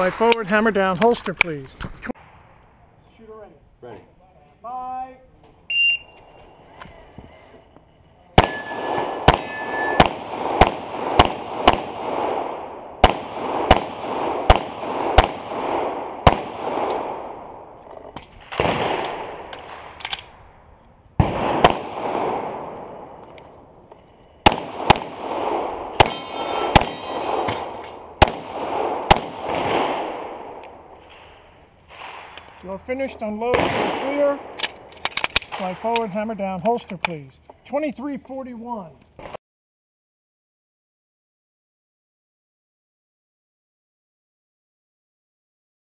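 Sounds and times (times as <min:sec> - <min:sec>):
shot timer beep: 0:05.7 - 0:06.2, 0:08.4 - 0:10.1
pistol shots echoing: 0:08.4 - 0:17.7, 0:24.4 - 0:31.0.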